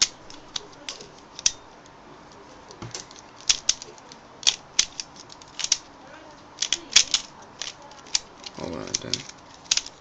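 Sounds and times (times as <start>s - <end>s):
puzzle cube clicking: 3.0s - 5.9s, 6.6s - 10.0s.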